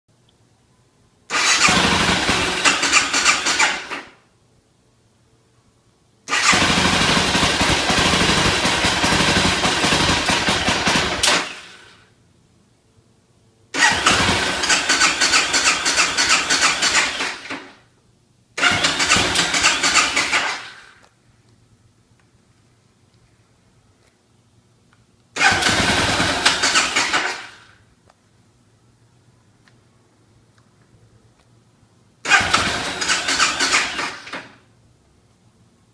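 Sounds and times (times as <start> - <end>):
motorcycle starter cranking: 1.3 - 4.2, 6.3 - 11.9, 13.8 - 17.7, 18.6 - 21.0, 25.4 - 27.8, 32.2 - 34.6.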